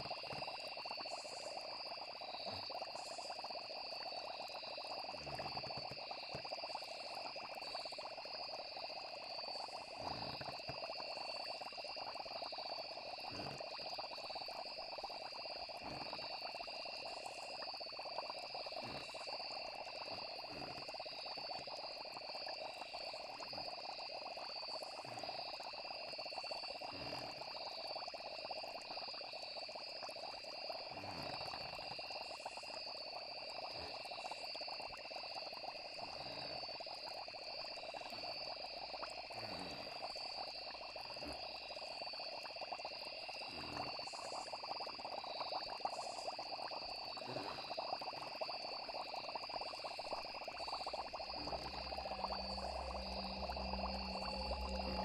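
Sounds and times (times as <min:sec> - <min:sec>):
crickets trilling: 0:00.0 - 0:55.0
frogs croaking: 0:00.0 - 0:55.0
low soft plops: 0:48.9 - 0:55.0.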